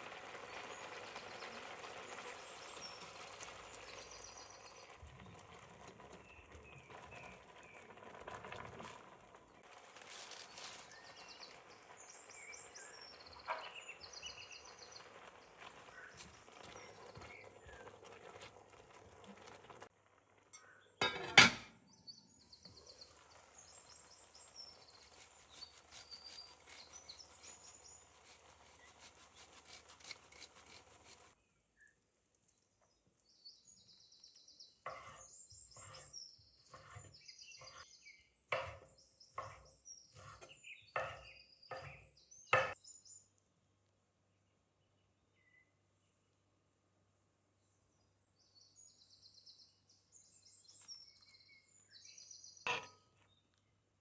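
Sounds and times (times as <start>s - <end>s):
birds chirping: 10.8s - 17.8s, 33.3s - 43.3s
kitchen handling noises: 20.6s - 21.8s
knife strokes on cutting board: 34.9s - 37.8s.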